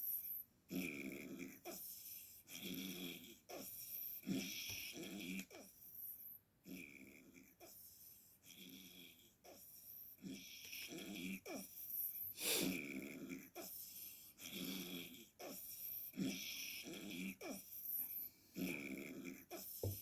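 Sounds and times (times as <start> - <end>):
person snoring: 0.7 - 3.4, 6.7 - 7.5, 12.4 - 20.0.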